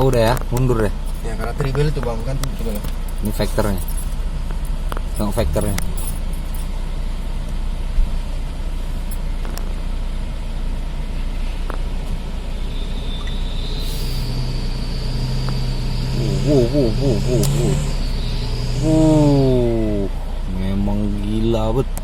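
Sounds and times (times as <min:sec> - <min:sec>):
truck engine running: 0:00.0 - 0:12.8, 0:13.4 - 0:21.5
deep steady hum: 0:04.0 - 0:08.7, 0:14.2 - 0:20.6.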